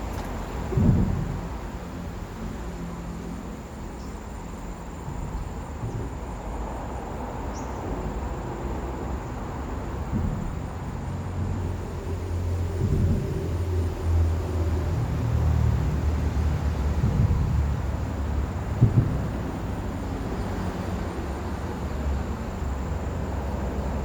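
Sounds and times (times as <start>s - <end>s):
low rumble: 0.0s - 2.6s.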